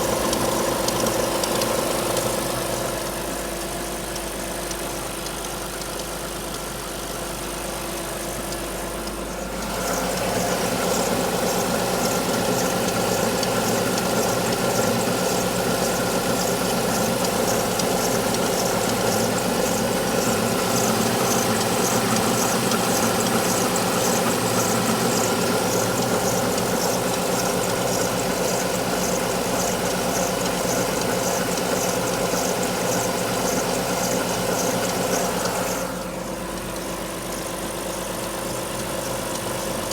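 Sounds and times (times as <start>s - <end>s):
car engine idling: 0.0s - 39.9s
high-pitched engine chatter: 8.3s - 39.9s.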